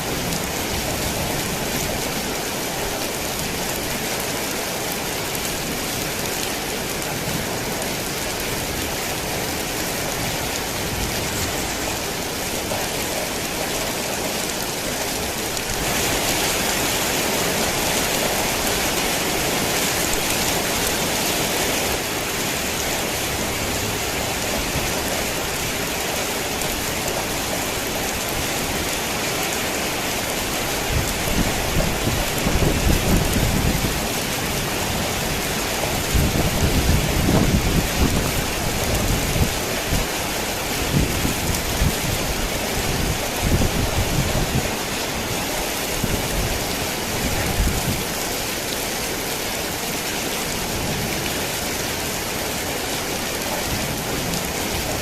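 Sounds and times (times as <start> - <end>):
heavy rain on a tin roof: 0.0 - 55.0.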